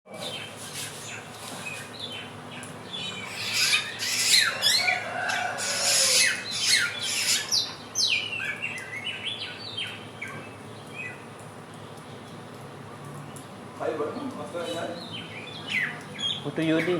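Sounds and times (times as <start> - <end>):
bird singing chirps and whistles: 3.0 - 4.9, 5.8 - 10.0.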